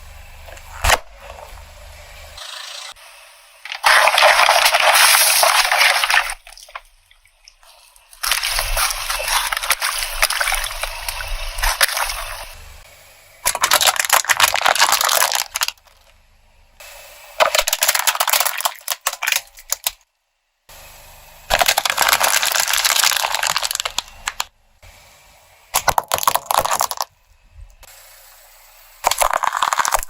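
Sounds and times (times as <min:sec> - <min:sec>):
car tyre crushing objects: 0:00.4 - 0:02.3, 0:03.7 - 0:07.0, 0:08.0 - 0:12.6, 0:13.5 - 0:16.2, 0:21.5 - 0:24.5, 0:25.8 - 0:27.2, 0:29.0 - 0:30.0.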